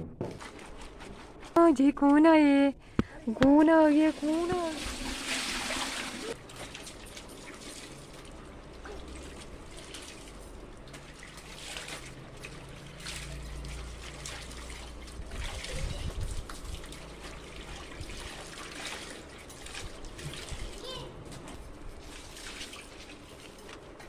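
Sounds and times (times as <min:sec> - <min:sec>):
water trickling: 0:04.1 - 0:20.9.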